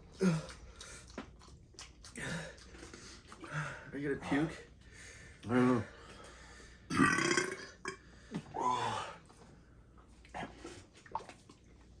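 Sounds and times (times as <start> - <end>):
person belching loudly: 6.9 - 8.0.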